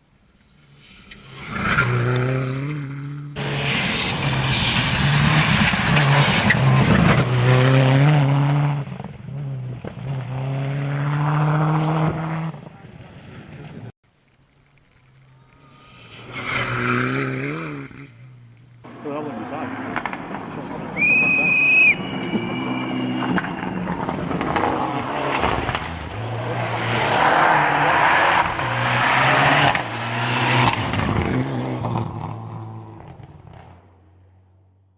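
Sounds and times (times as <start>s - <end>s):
rally car engine revving: 1.0s - 13.9s, 16.0s - 33.9s
rush of noise: 3.4s - 7.3s, 18.9s - 31.2s
tyres on gravel: 12.7s - 32.1s.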